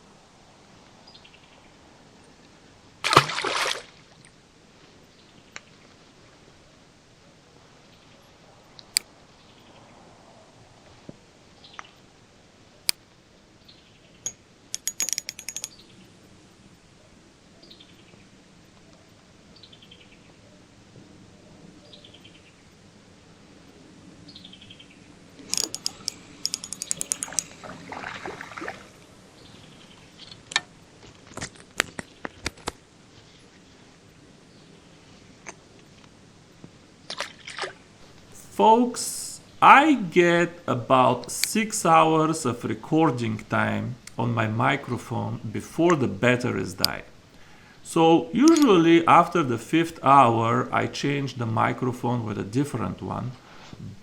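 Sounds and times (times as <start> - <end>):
sharp clicks: 25.4 - 27.6, 48.4 - 48.8
rustling noise: 30.2 - 34.2.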